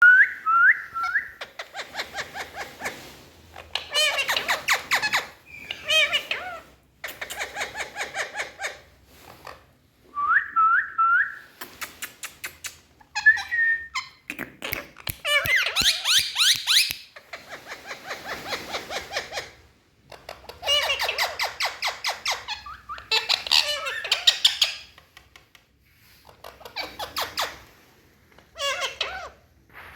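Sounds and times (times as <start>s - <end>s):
parakeets chattering: 3.6s - 8.8s, 20.4s - 24.9s.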